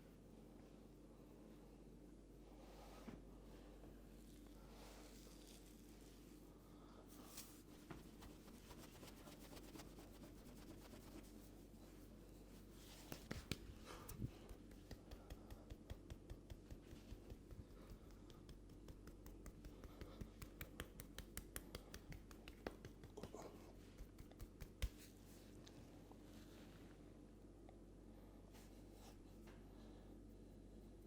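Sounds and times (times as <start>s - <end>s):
sharp clicks and snaps of massage: 8.2s - 11.3s, 12.9s - 25.8s.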